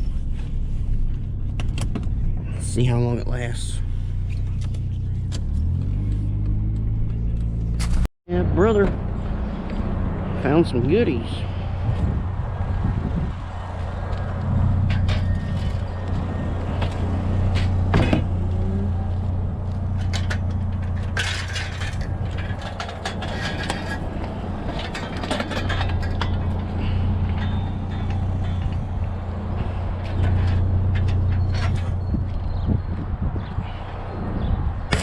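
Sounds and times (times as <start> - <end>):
pickup truck engine droning: 0.0 - 33.8
rattles and clicks: 13.7 - 33.0.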